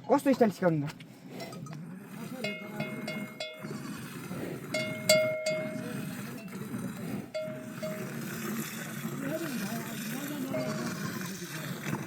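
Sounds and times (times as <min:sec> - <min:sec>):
metal livestock bells clanking: 0:00.0 - 0:04.0, 0:04.6 - 0:08.8, 0:10.2 - 0:11.6.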